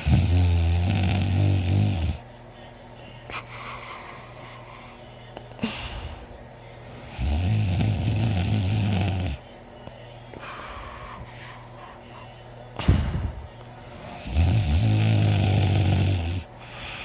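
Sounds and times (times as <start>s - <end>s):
person snoring: 0.0s - 2.2s, 6.9s - 9.4s, 12.8s - 17.0s
quiet breathing: 1.5s - 7.5s, 8.4s - 17.0s.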